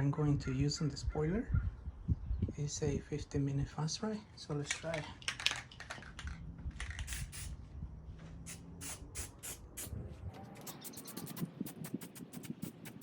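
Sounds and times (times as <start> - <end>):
aerosol can rattling clicks: 4.6 - 7.5
spray paint hissing: 6.8 - 7.6, 8.5 - 10.0, 10.6 - 13.0.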